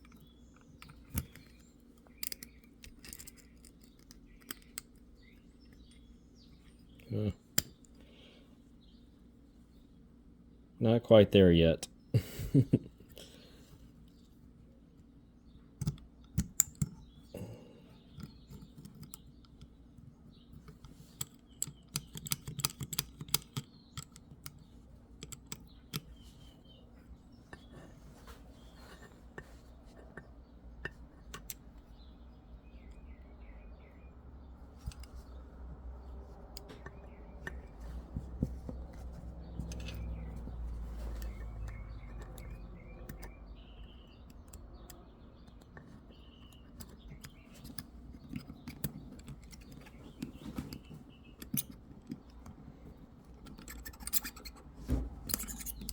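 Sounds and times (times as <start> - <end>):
small metal clicks and taps: 0.0 - 7.0, 15.8 - 17.2, 18.1 - 26.2, 29.0 - 32.0, 36.5 - 54.6.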